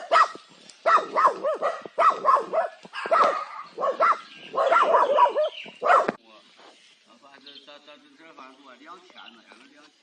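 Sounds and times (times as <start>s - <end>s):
dog barking: 0.0s - 6.2s.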